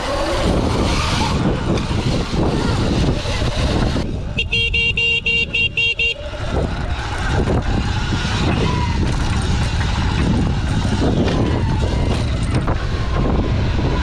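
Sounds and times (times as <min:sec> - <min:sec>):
wind and road noise: 0:00.0 - 0:14.0
vehicle horn beeping: 0:04.3 - 0:06.3.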